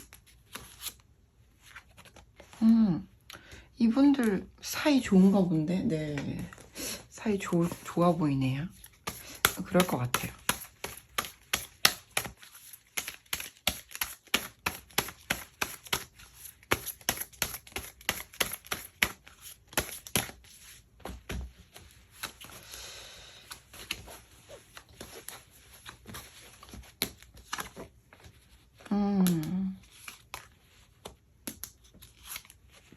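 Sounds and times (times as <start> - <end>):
cards sliding rustle: 0.0 - 2.6, 8.8 - 22.8, 23.4 - 28.9, 29.8 - 32.9
cards clicking and snapping: 8.9 - 20.4, 29.2 - 32.6.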